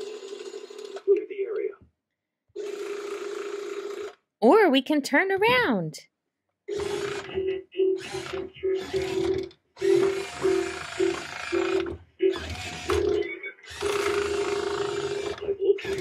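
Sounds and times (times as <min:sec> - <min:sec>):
toy truck motor whirring: 0:00.0 - 0:01.1, 0:06.7 - 0:07.4, 0:08.0 - 0:16.0.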